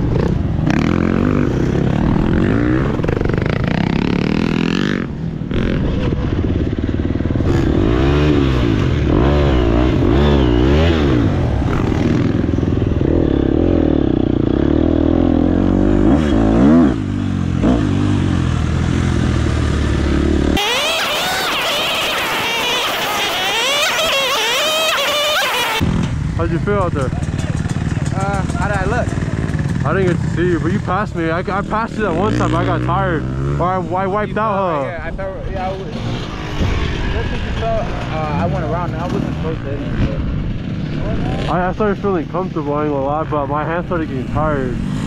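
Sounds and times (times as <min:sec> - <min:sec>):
dirt bike engine revving: 0:00.0 - 0:34.9, 0:35.6 - 0:45.0
bright noisy engine climbing in pitch: 0:20.4 - 0:25.8.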